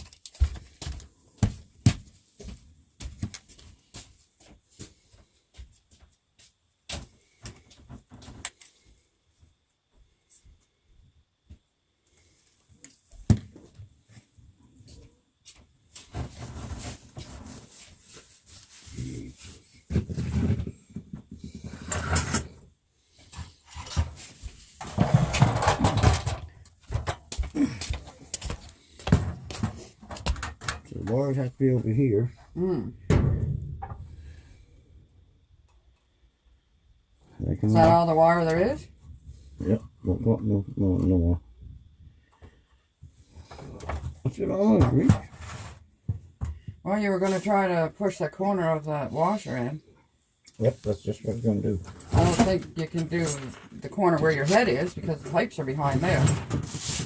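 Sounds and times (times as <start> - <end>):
parts knocking and clattering: 23.3 - 31.2
wall heater knocks and clunks: 33.0 - 34.1, 46.0 - 46.8.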